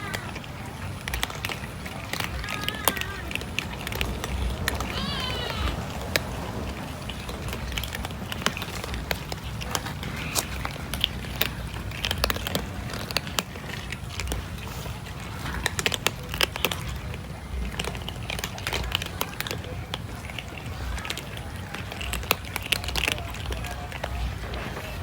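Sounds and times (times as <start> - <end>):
cat chewing food: 0.0 - 25.0
low background rumble: 0.0 - 25.0.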